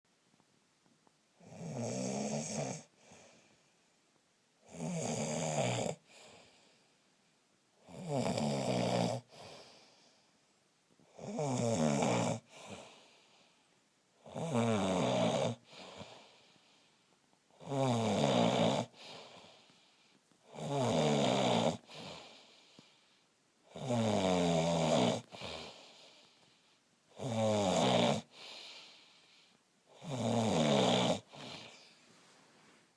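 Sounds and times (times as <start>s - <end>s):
man snoring: 1.4s - 3.2s, 4.6s - 6.5s, 7.8s - 9.7s, 11.1s - 13.1s, 14.2s - 16.4s, 17.6s - 19.6s, 20.4s - 22.5s, 23.7s - 26.3s, 27.1s - 29.0s, 29.9s - 31.9s
faint breath out: 9.3s - 10.5s, 28.3s - 29.7s.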